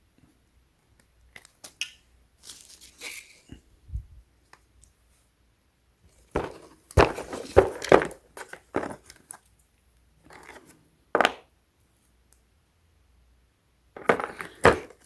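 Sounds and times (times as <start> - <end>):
packaging rustling and knocking: 6.4 - 9.2, 14.0 - 15.0.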